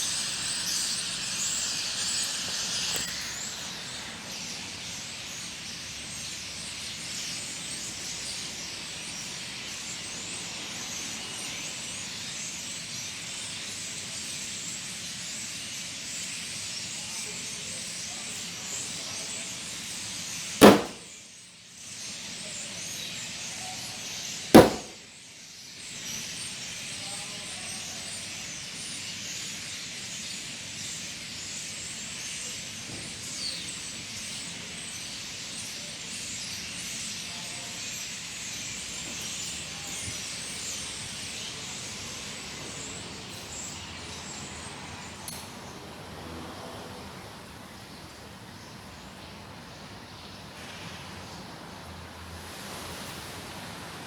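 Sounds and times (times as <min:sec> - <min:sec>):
sharp bangs: 0:20.6 - 0:21.1, 0:24.6 - 0:25.0.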